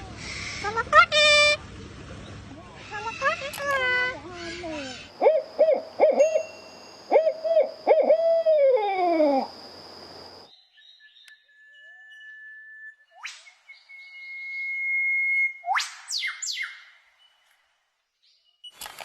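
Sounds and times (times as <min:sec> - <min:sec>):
owl hooting: 0:04.4 - 0:10.4
faint whistling tone: 0:10.6 - 0:16.4.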